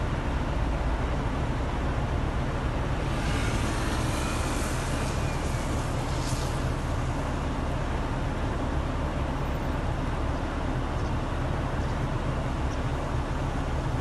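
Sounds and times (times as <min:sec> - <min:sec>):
road traffic rumble: 0:00.0 - 0:14.0
vehicle passing with tyre hiss: 0:02.2 - 0:10.7.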